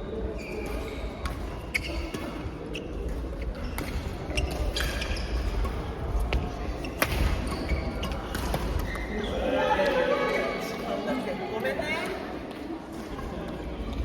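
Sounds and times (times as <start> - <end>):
shoes squeaking on court: 0.2 - 9.4
ball hits in a hall: 0.6 - 9.2.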